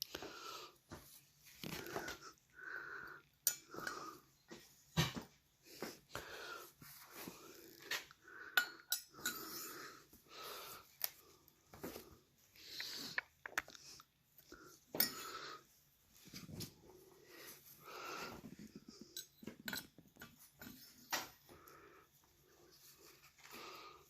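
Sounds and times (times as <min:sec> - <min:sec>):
wheezy breathing: 0:01.6 - 0:04.6, 0:05.6 - 0:13.2, 0:16.8 - 0:19.2.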